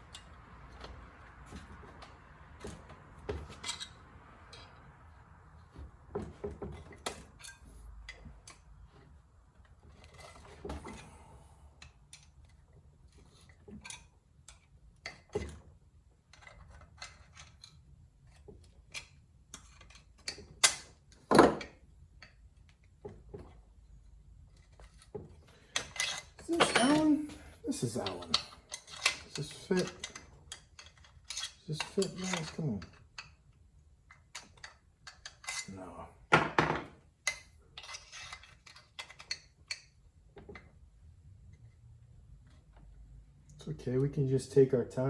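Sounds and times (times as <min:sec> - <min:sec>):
metal hand tools clinking: 0:25.7 - 0:33.3.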